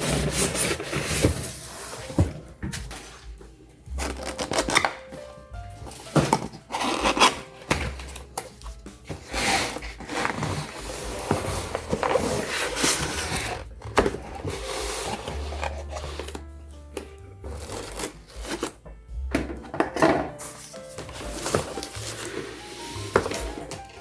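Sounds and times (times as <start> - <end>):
background music with bass line: 2.2 - 24.0
packaging rustling and knocking: 5.8 - 24.0.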